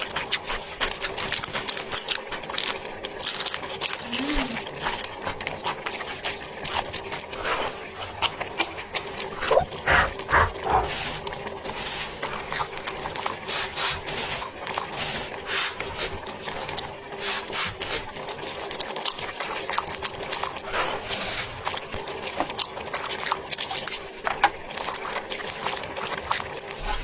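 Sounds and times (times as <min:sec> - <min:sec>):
chewing and crunching: 0:00.0 - 0:27.0.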